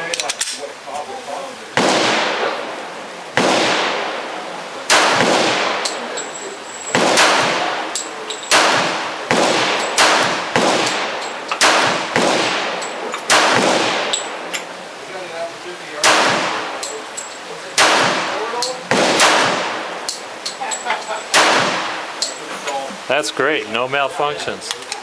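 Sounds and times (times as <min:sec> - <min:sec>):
pistol shots with echo: 0:01.8 - 0:02.7, 0:03.4 - 0:04.3, 0:04.9 - 0:06.2, 0:06.9 - 0:14.4, 0:16.0 - 0:17.0, 0:17.8 - 0:20.2, 0:21.3 - 0:22.0
faint metallic clinks: 0:05.9 - 0:06.9.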